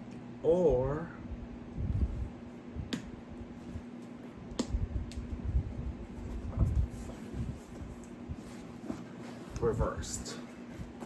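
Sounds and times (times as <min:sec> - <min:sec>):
faint hum: 0:00.0 - 0:11.0
leather bag rubbing and thumping: 0:06.2 - 0:11.0.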